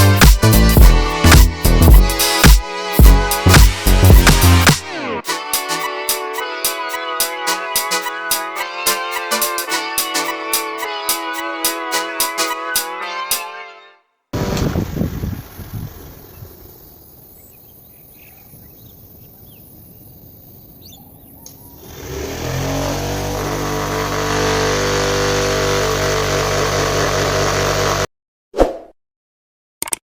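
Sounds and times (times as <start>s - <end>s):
bird chirps: 15.7s - 21.9s.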